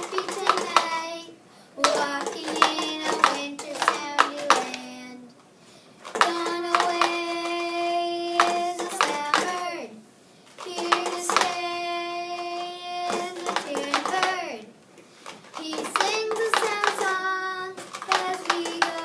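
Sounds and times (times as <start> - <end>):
high voice singing: 6.2 - 10.0, 10.6 - 14.7, 15.6 - 19.0.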